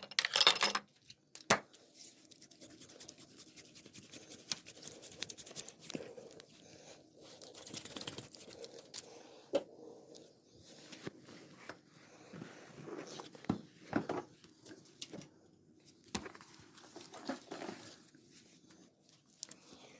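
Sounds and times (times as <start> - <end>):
rubbing and scratching on skin: 1.9 - 9.1.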